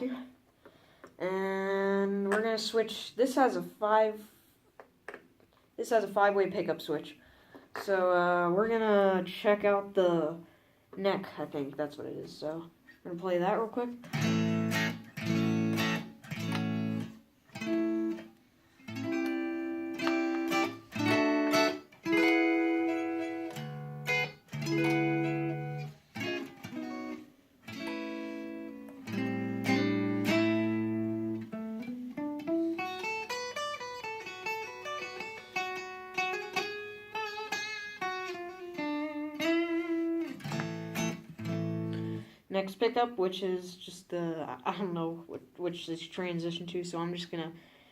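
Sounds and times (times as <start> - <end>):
electric guitar playing: 14.0 - 42.3.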